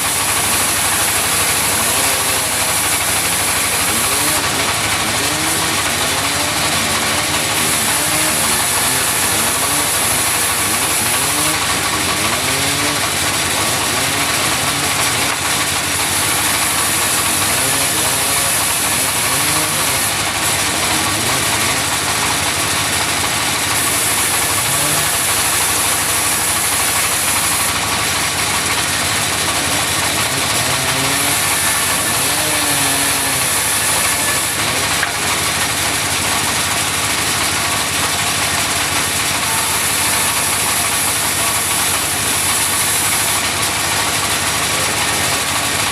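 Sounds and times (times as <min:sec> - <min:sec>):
sawmill machinery running: 0:00.0 - 0:45.9.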